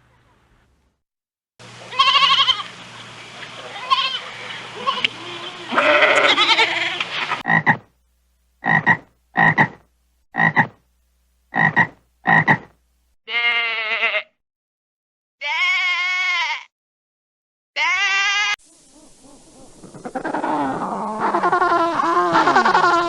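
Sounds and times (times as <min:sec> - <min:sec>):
wavering bleats: 0:01.9 - 0:02.7, 0:03.6 - 0:07.8, 0:13.3 - 0:14.4, 0:15.4 - 0:16.7, 0:17.8 - 0:18.6, 0:20.0 - 0:23.0.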